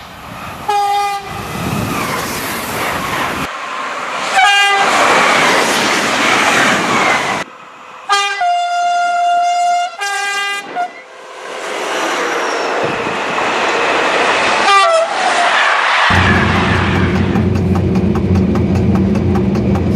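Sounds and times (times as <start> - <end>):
trains rushing past: 0.0 - 9.0, 10.4 - 19.9
train horn blast: 0.7 - 1.3, 4.4 - 4.9, 8.1 - 11.0, 14.6 - 15.2.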